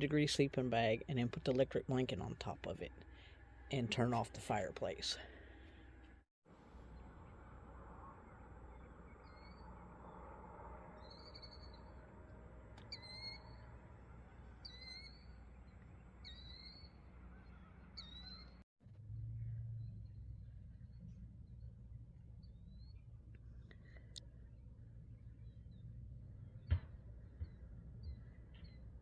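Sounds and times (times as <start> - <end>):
low hum: 0.0 - 29.0
bird calling: 10.9 - 12.2, 12.8 - 18.6.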